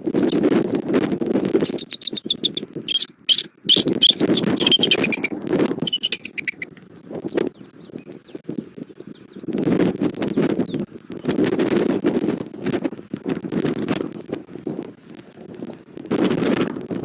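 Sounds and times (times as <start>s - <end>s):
wind buffeting microphone: 0.0s - 17.0s
eagle chittering calls: 1.6s - 6.7s.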